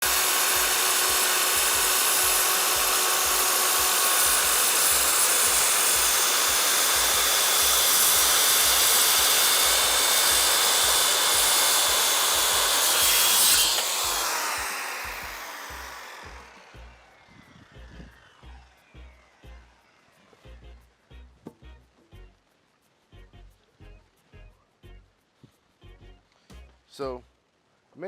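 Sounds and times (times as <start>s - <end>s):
circular saw cutting wood: 0.0s - 20.4s.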